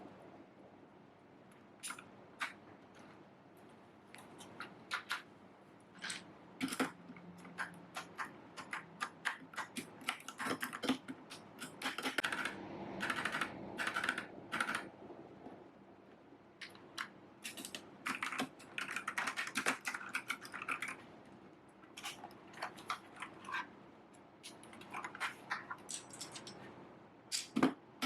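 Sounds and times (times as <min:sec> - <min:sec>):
mechanical keyboard key clacks: 0:16.6 - 0:21.0.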